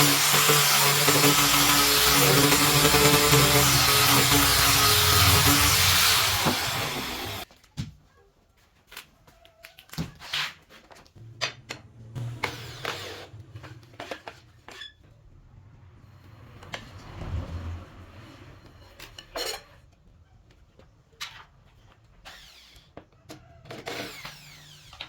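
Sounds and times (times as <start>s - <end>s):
wood and tools knocking: 0.0s - 7.4s.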